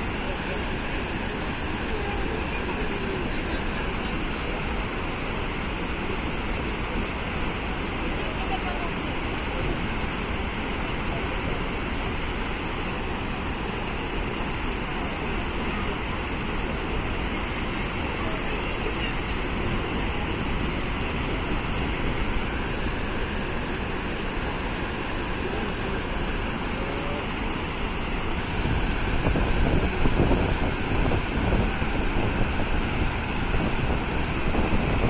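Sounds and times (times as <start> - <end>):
waterfall rushing water: 0.0 - 35.0
wind buffeting microphone: 21.4 - 35.0.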